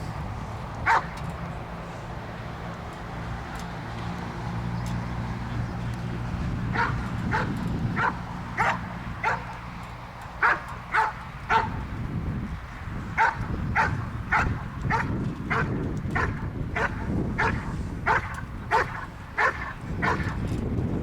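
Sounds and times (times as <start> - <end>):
dog barking: 0.8 - 1.1, 6.7 - 9.5, 10.4 - 11.8, 13.2 - 20.4.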